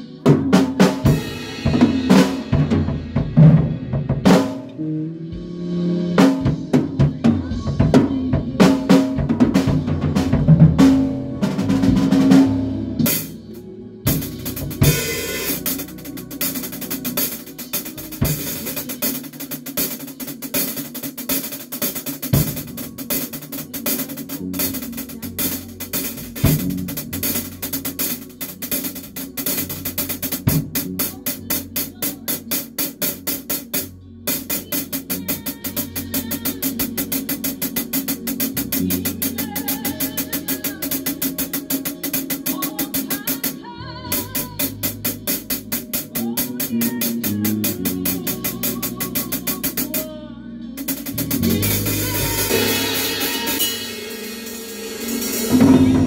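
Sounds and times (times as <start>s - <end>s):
bass notes: 0.0s - 18.9s, 22.3s - 56.0s
band playing: 0.0s - 56.0s
hi-hat strokes: 14.1s - 50.1s, 50.8s - 55.8s.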